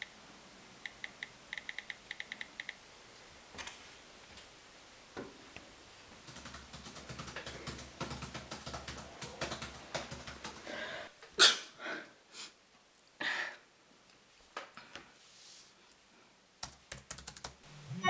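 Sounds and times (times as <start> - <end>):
typing on computer keyboard: 6.2 - 10.8, 16.6 - 17.6
person sneezing: 11.4 - 12.0.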